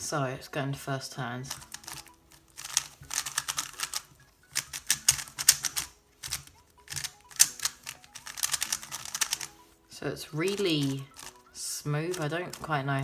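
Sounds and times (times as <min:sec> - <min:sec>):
plastic puzzle cube clicking: 0:01.5 - 0:09.6, 0:10.4 - 0:11.5, 0:12.1 - 0:13.0.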